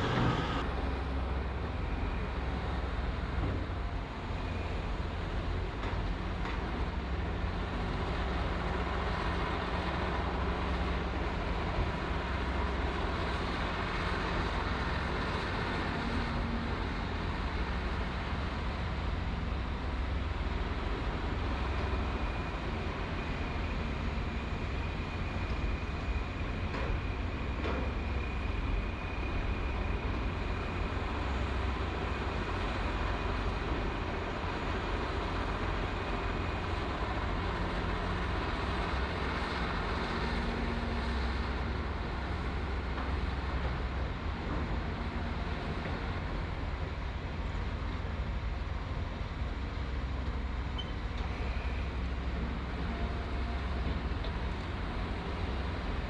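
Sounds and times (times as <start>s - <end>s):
thin high whine: 0.0s - 0.7s
heavy machinery engine rumble: 0.0s - 56.0s.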